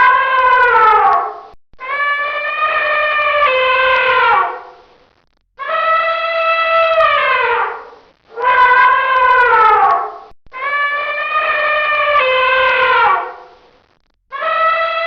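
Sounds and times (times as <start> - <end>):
elephant trumpeting: 1.9 - 4.7, 5.6 - 13.5.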